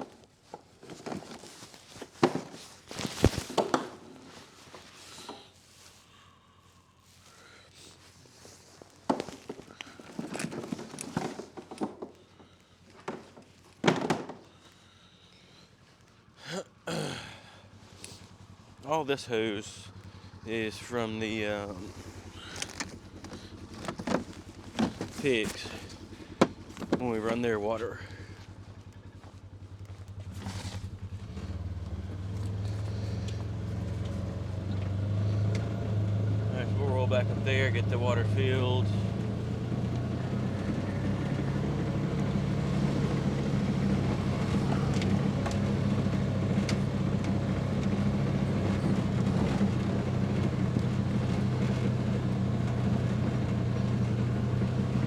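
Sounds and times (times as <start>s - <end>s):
handling noise: 0.0s - 6.1s, 7.2s - 14.8s, 19.9s - 35.0s, 39.7s - 55.0s
sharp knocks and thuds: 13.0s - 14.5s
vehicle engine revving: 19.6s - 55.0s
footsteps: 21.7s - 27.6s, 28.2s - 34.3s.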